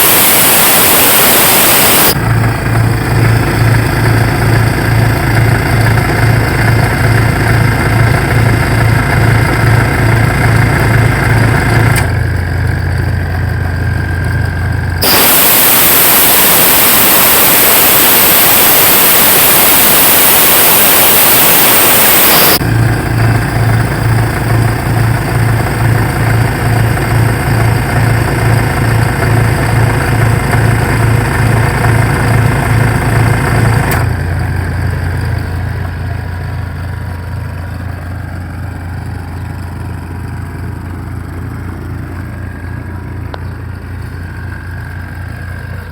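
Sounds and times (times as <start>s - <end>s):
generator engine throbbing: 0.0s - 45.9s
compressed air hissing: 15.0s - 22.6s.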